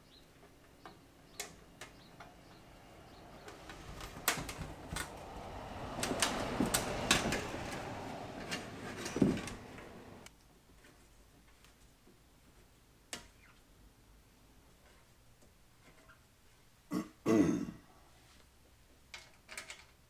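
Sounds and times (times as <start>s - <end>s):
rustling scraping noise: 2.2s - 11.2s
metal clicks and knocks: 3.4s - 10.3s.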